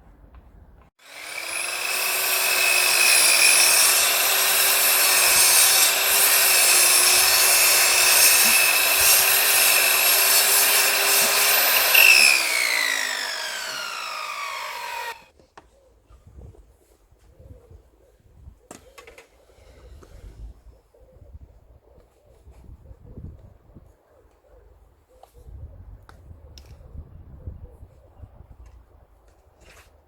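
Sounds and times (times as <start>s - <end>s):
table saw running: 1.0s - 15.3s.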